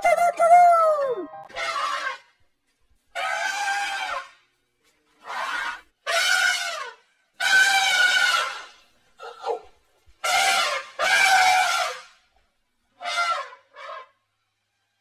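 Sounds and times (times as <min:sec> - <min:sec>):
elephant trumpeting: 0:01.4 - 0:02.3, 0:03.2 - 0:04.4, 0:05.2 - 0:12.2, 0:13.0 - 0:14.2.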